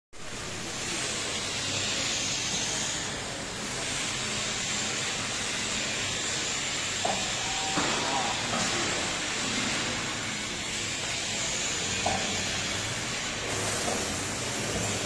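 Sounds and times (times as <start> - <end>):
hiss: 11.4 - 15.0.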